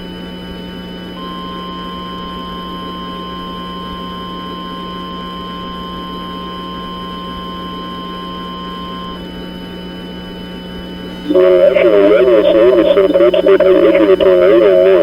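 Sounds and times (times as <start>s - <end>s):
low hum and hiss: 11.1s - 15.0s
steady attention tone: 11.1s - 15.0s.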